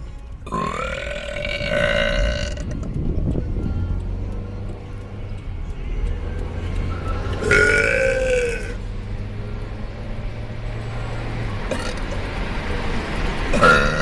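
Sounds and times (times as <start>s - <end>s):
loud burp: 0.5s - 2.8s, 7.4s - 8.8s, 11.7s - 12.0s, 13.5s - 14.0s.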